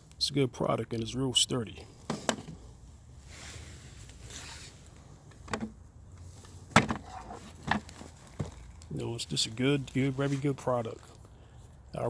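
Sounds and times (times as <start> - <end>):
handling clicks and knocks: 6.4 - 9.0.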